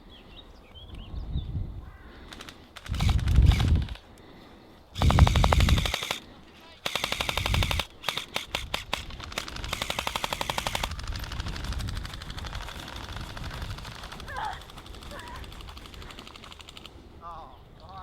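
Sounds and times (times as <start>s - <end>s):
airsoft guns firing bursts: 2.3s - 4.0s, 5.0s - 17.0s.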